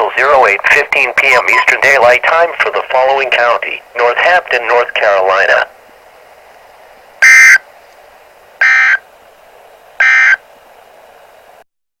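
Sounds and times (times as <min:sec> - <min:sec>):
buzzy digital data tones: 0:08.6 - 0:09.0, 0:10.0 - 0:10.4.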